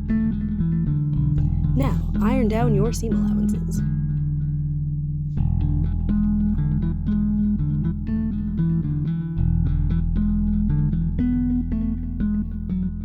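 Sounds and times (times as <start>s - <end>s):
steady bass line: 1.0s - 3.9s, 4.7s - 12.8s.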